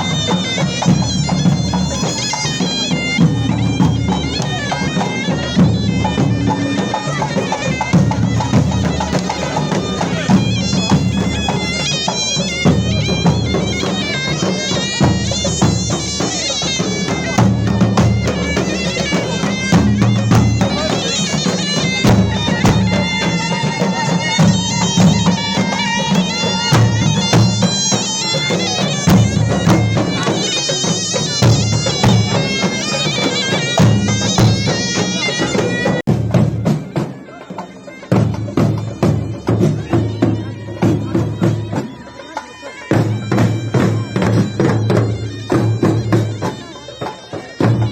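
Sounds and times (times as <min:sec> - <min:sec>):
heavy drumming: 0:00.0 - 0:47.9
wavering reed wind instrument: 0:00.0 - 0:47.9.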